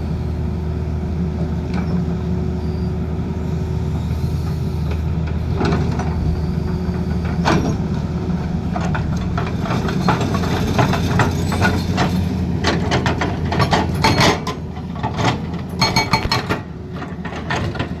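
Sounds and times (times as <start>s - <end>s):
diesel engine running: 0.0s - 18.0s
metallic clanks and knocks: 15.8s - 16.7s.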